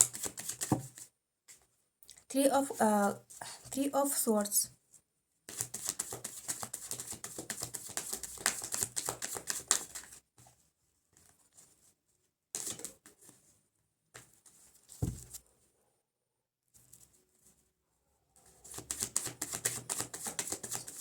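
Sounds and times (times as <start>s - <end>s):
cards being shuffled: 0.0s - 1.0s, 5.5s - 10.2s, 12.6s - 12.9s, 18.7s - 21.0s
card laid down thump: 15.0s - 15.4s.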